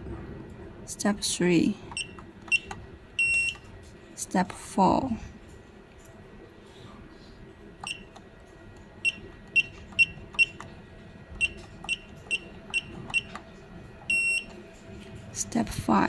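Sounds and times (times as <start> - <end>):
keypad beeps: 1.9 - 3.7, 7.8 - 8.2, 9.0 - 10.7, 11.4 - 13.4, 14.1 - 14.6.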